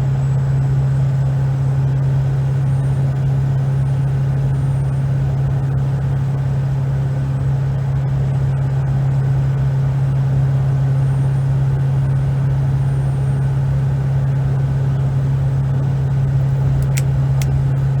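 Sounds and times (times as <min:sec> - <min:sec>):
diesel truck cab drone: 0:00.0 - 0:18.0
finger snaps: 0:16.7 - 0:17.6.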